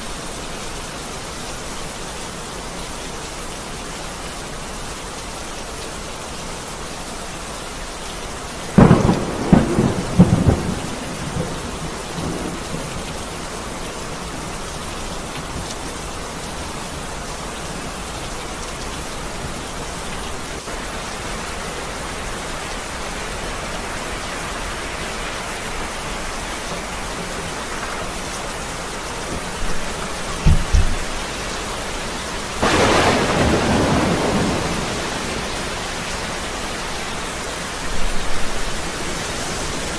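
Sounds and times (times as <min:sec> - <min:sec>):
rain falling: 0:00.0 - 0:39.9
thunder: 0:08.8 - 0:13.1, 0:32.6 - 0:36.1.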